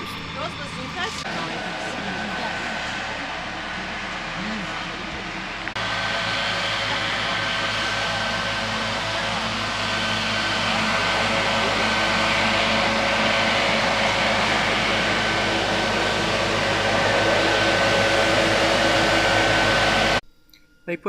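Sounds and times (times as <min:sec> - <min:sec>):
machine motor running with whine: 0:00.0 - 0:20.2.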